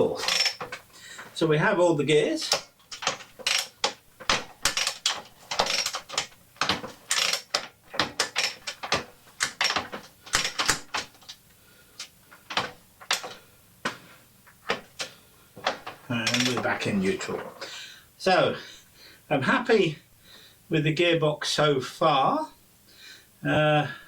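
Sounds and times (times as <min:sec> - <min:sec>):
gearbox clicking through gears: 0:02.4 - 0:11.4.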